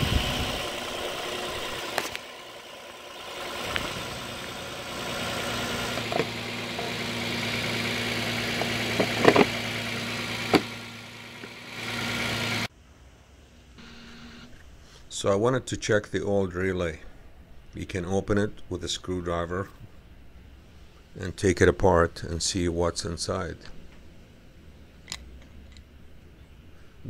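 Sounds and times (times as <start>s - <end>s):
car engine idling: 0.0s - 12.7s
sharp clicks and knocks: 6.0s - 6.4s, 8.6s - 9.6s, 10.5s - 10.8s.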